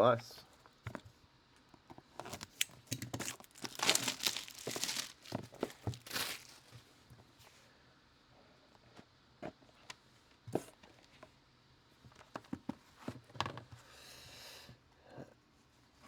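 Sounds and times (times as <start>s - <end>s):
cards sliding rustle: 2.3s - 6.7s.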